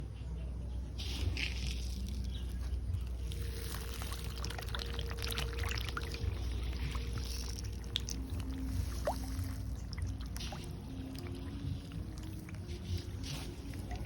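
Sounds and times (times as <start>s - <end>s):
fish splashing at water surface: 1.0s - 14.0s
low rumble: 1.2s - 14.0s.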